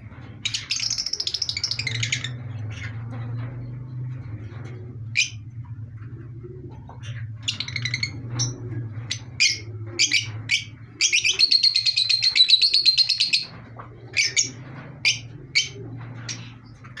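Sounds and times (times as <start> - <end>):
parrots chirping: 0.5 - 3.0, 7.0 - 17.0.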